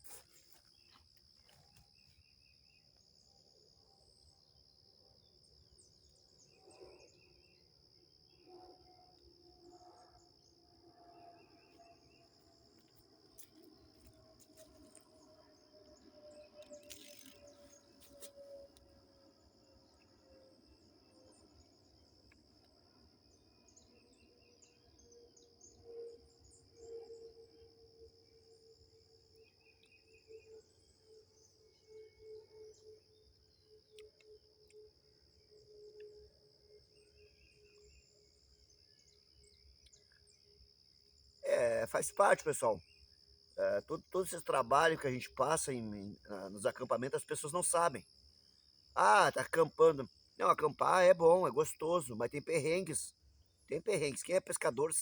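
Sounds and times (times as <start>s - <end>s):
high insect trill: 0.0s - 55.0s
high-pitched insect buzz: 15.9s - 18.8s.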